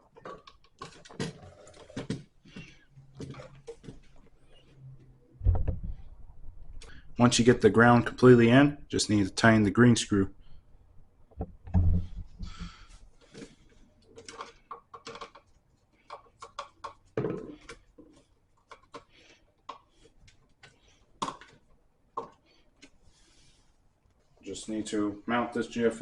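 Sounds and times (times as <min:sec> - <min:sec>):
low knocks: 0:05.4 - 0:06.0.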